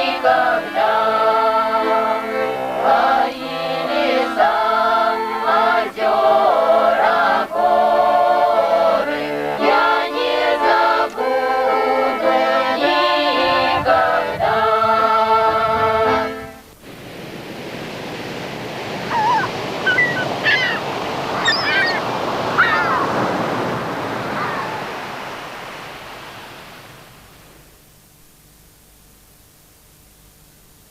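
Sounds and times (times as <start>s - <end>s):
choir singing chords: 0.0s - 16.6s
waves rushing: 16.8s - 27.8s
short bird calls: 19.0s - 23.2s.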